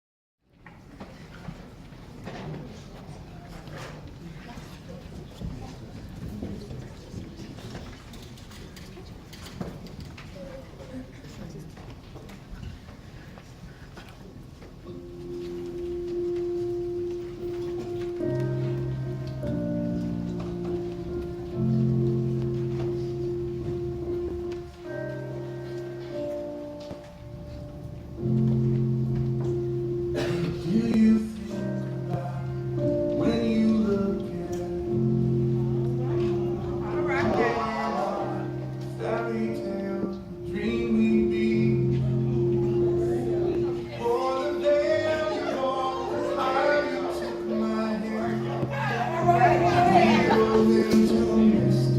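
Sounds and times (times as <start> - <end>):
murmur of voices: 0.6 - 51.9
held chords: 14.8 - 51.9
person singing: 29.5 - 51.9.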